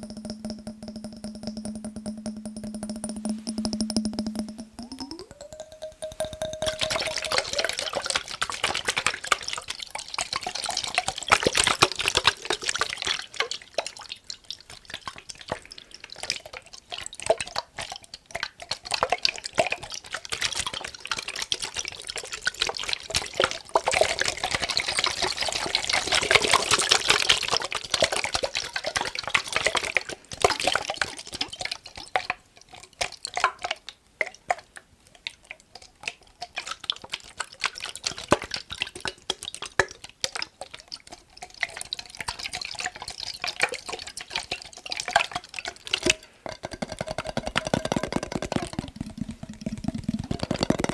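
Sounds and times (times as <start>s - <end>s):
fast tapping on glass: 0.0s - 7.9s, 46.6s - 50.9s
water sloshing in a glass jar: 0.0s - 14.1s.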